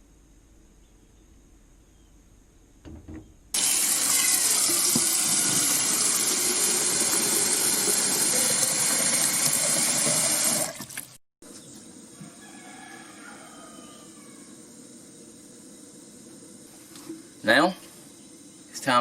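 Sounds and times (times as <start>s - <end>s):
water running from a tap: 3.6s - 11.2s.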